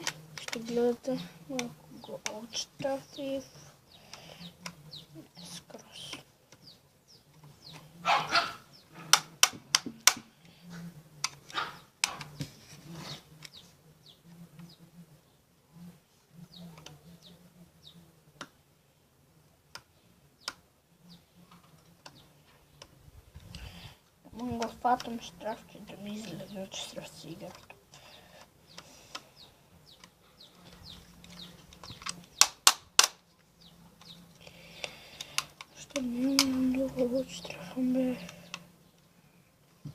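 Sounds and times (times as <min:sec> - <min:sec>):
sharp plastic clicks and taps: 0:09.1 - 0:10.3, 0:19.7 - 0:20.6, 0:30.8 - 0:33.2, 0:34.8 - 0:36.8.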